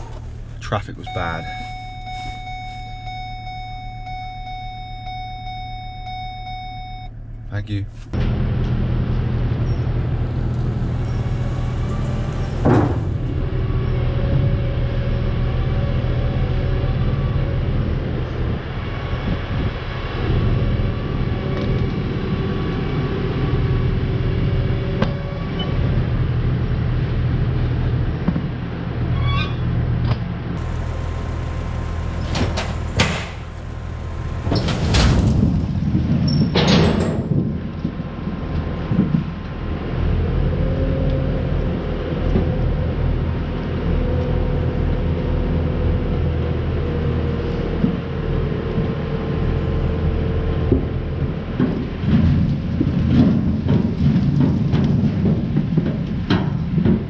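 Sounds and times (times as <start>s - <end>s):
vehicle engine running: 6.5s - 29.0s, 30.3s - 34.6s.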